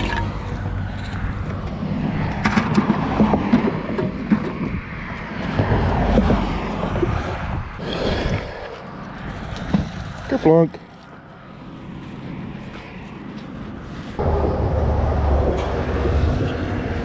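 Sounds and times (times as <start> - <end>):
highway traffic rumble: 0.0 - 17.0
vehicle passing by: 11.3 - 17.0.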